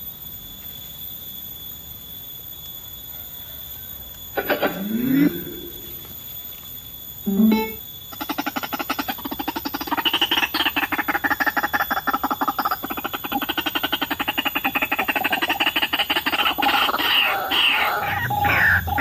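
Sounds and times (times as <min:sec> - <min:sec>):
bird calling in harsh pulses: 0:07.3 - 0:19.0
bird squeal: 0:08.2 - 0:19.0.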